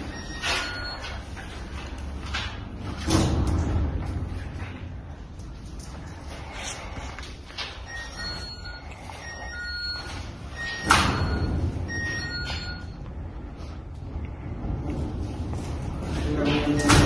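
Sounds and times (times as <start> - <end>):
short electronic beeps: 0.0 - 1.2, 7.9 - 13.0.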